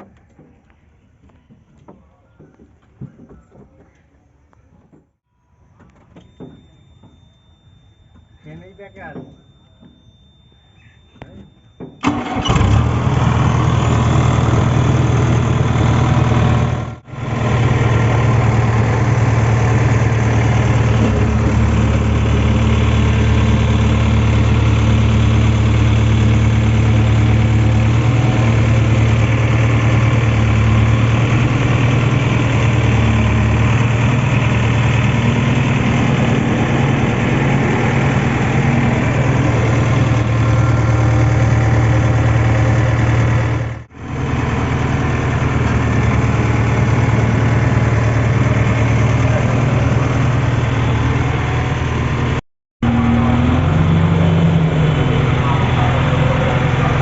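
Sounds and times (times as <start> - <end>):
diesel engine idling: 11.4 - 57.0.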